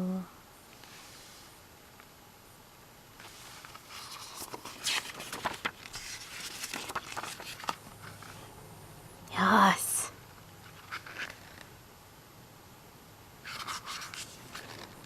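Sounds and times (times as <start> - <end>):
photobook pages rustling: 3.2 - 8.5, 10.6 - 11.7, 13.4 - 15.0.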